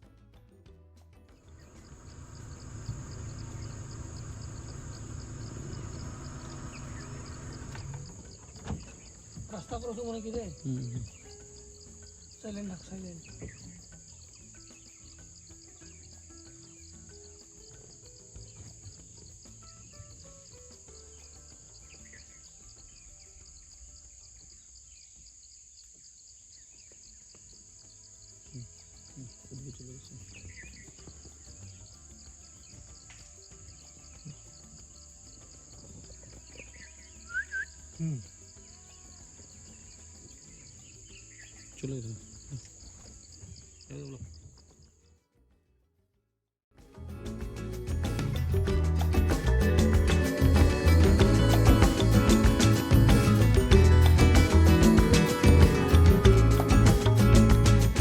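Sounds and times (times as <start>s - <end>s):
insects buzzing: 1.5s - 45.0s, 47.7s - 58.0s
insect chirping: 1.5s - 45.1s, 47.7s - 58.0s
vehicle engine idling: 1.6s - 8.6s.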